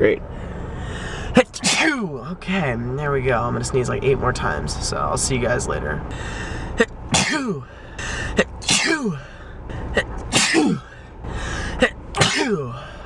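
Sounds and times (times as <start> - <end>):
person sneezing: 1.4 - 2.1, 6.8 - 9.3, 9.9 - 10.9, 11.6 - 13.0.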